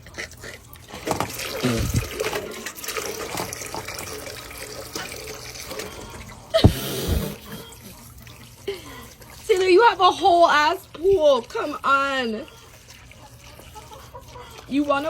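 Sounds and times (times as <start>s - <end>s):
water running from a tap: 0.6s - 15.0s
loud thump: 6.6s - 7.4s.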